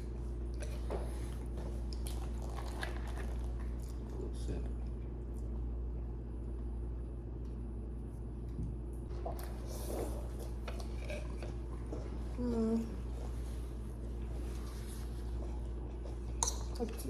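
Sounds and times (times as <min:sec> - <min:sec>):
steady low hum: 0:00.0 - 0:17.0
faint chewing: 0:00.1 - 0:05.6, 0:09.1 - 0:17.0.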